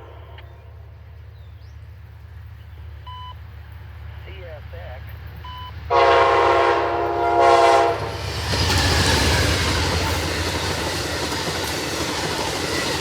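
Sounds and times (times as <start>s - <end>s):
passenger train passing: 0.0s - 13.0s
multi-chime train horn: 5.9s - 8.2s.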